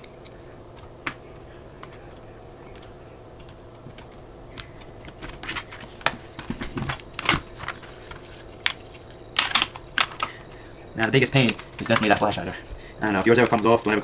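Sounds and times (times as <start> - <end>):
plastic parts clicking: 9.4 - 10.4.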